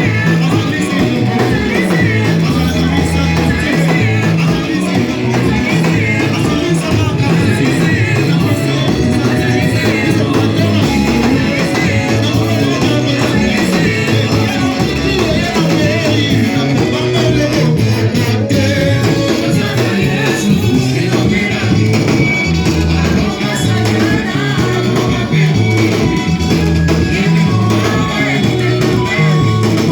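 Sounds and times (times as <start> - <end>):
bass line: 0.0 - 29.9
guitar: 0.0 - 29.9
people singing: 0.0 - 29.9.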